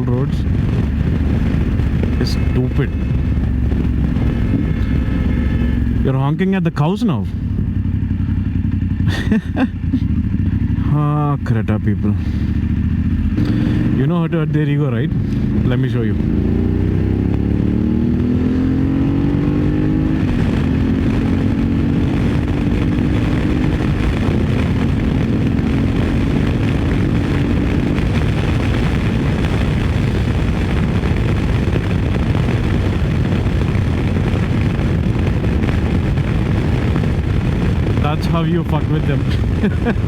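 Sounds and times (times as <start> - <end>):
wind rushing: 0.0 - 6.1, 16.2 - 40.0
motorcycle engine accelerating: 0.0 - 40.0.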